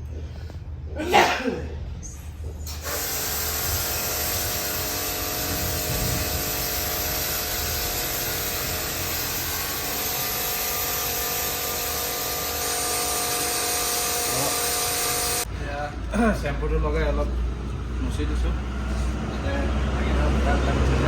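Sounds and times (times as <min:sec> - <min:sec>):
pressure washer spray hissing: 0:02.7 - 0:15.5
electric motor whine: 0:02.8 - 0:15.5.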